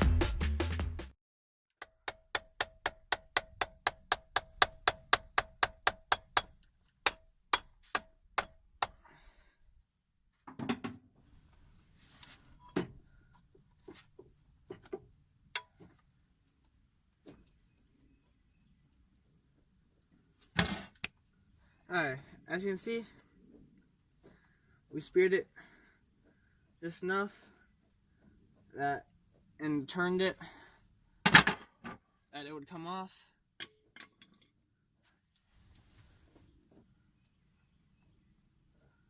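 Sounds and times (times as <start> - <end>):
hammer striking metal: 1.8 - 9.0.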